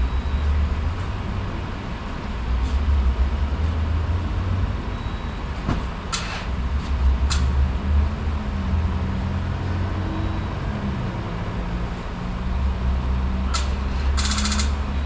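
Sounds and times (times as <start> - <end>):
vehicle engine idling: 12.4 - 15.0.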